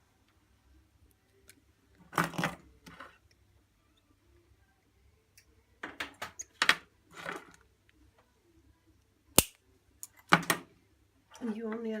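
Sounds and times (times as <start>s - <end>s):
pliers clicking on wire: 9.4s - 10.3s.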